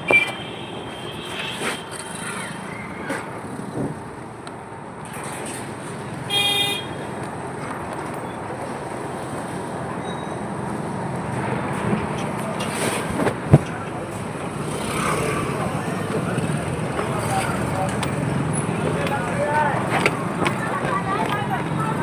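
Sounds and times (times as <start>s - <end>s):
street traffic noise: 0.0s - 22.0s
vehicle horn honking: 6.3s - 7.0s.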